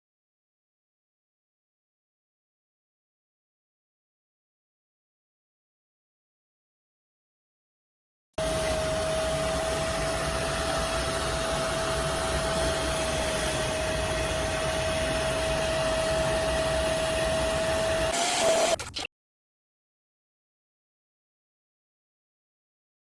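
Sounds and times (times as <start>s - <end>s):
cleaner motor whirring: 8.4s - 19.1s.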